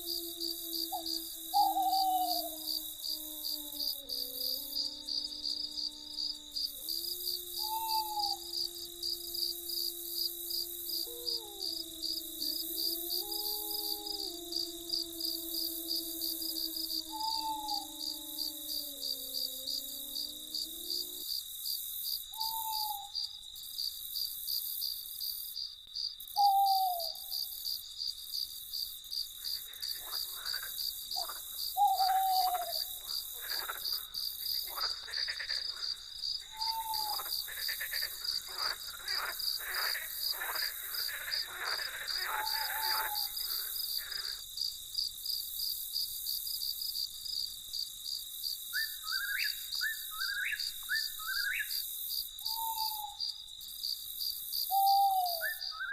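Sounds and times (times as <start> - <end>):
rapid repeated animal calls: 0.0 - 21.3, 29.4 - 44.4
crickets trilling: 0.0 - 55.9.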